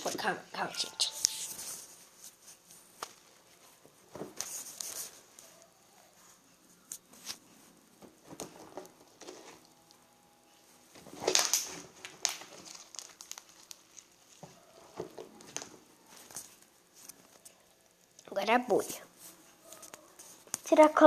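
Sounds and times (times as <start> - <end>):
slime crackling and popping: 11.2 - 14.4.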